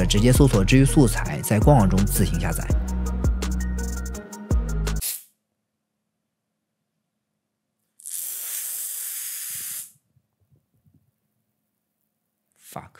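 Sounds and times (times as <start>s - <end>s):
background music: 0.0s - 5.0s
steady spray hiss: 8.1s - 10.0s.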